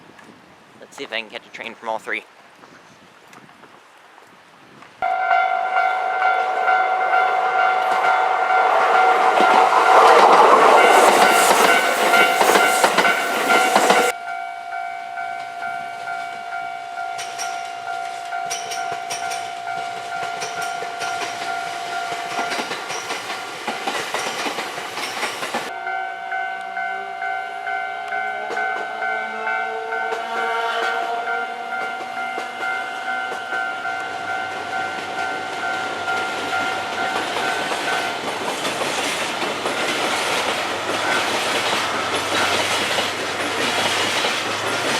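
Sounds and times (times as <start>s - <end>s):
level-crossing warning bell: 5.0s - 38.7s, 40.8s - 42.9s
train passing on rails: 5.0s - 44.9s.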